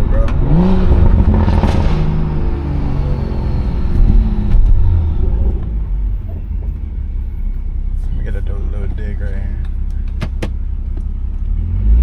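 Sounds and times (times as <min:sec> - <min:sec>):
airy rush: 0:00.0 - 0:08.2
car engine through loud exhaust: 0:00.0 - 0:12.0.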